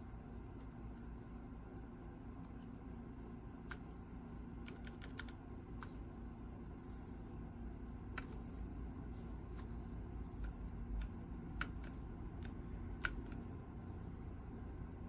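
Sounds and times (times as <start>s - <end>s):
steady low hum: 0.0s - 15.0s
keyboard key clicks: 4.7s - 6.0s, 10.4s - 13.4s.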